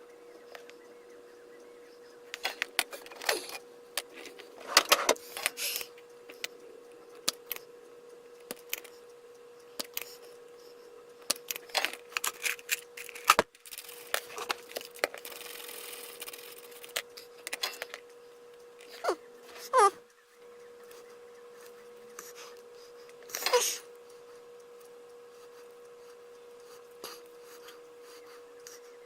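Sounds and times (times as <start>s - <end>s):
faint steady hum: 0.0s - 29.0s
plastic parts clicking and rattling: 11.5s - 18.0s.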